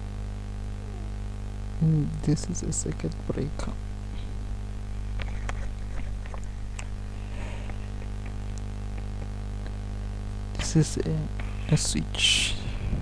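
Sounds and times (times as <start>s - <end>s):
low electrical hum: 0.0s - 13.0s
handling noises: 3.9s - 12.0s
faint clicks: 4.1s - 11.7s.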